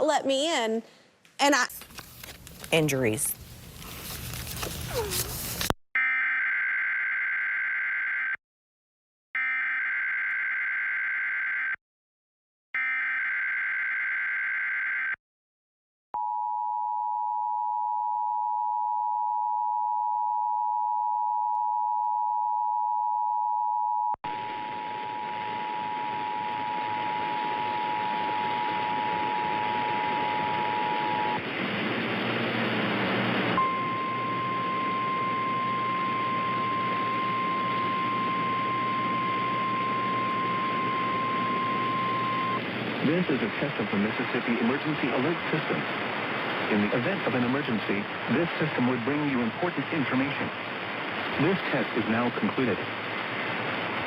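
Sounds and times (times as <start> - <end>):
two-tone attention signal: 33.6 - 42.6.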